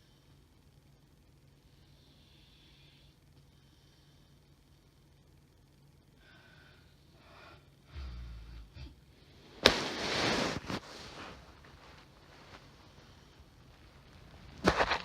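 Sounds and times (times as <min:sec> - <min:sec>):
woman snoring: 0:07.8 - 0:09.0.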